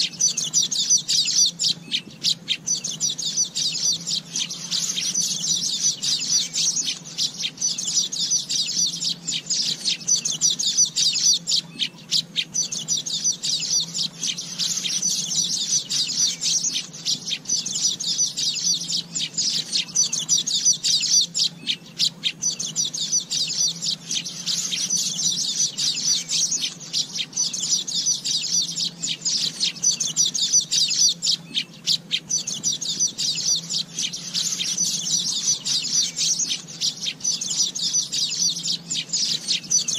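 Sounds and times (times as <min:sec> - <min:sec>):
bird chattering and twittering: 0:00.0 - 0:39.9.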